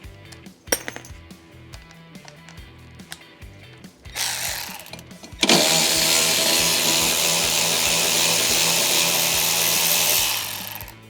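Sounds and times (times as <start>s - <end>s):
power drill running: 4.1s - 11.0s.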